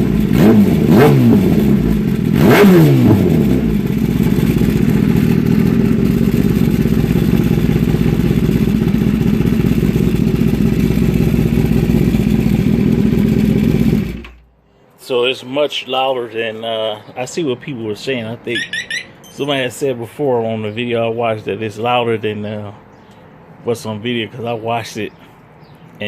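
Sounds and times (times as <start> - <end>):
loud motorcycle engine idling: 1.6 - 2.4, 3.0 - 14.4
engine throttle blip: 18.6 - 19.5.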